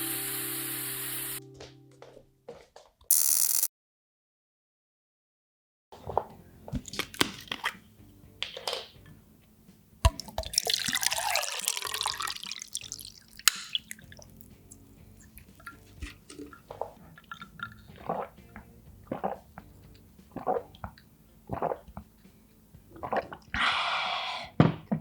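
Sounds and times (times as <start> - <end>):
liquid pouring: 10.1 - 18.4.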